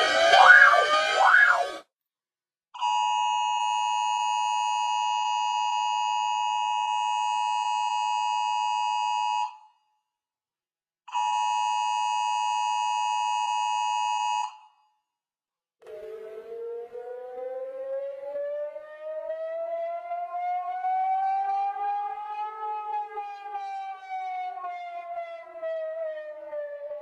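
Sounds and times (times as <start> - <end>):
dual-tone alarm signal: 0.0 - 1.8, 15.8 - 24.2.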